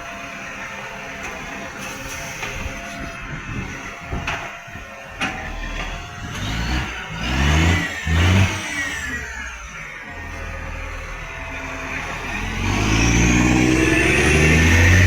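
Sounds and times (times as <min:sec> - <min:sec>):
garbage truck engine revving: 0:00.0 - 0:15.0
high whine: 0:10.2 - 0:15.0.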